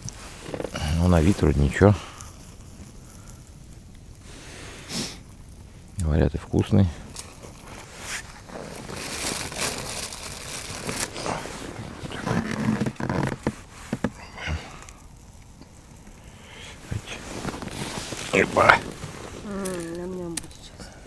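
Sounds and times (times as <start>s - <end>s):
plastic packaging crinkling and tearing: 7.0s - 21.0s.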